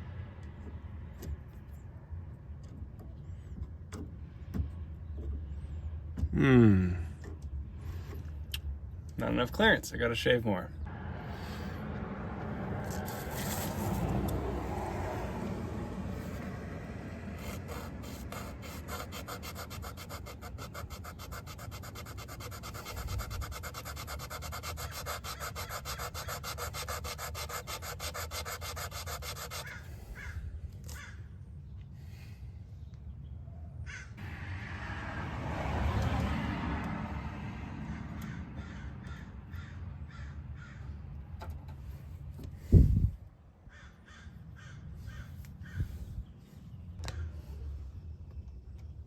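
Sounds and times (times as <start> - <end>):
sanding by hand: 16.1 - 29.9.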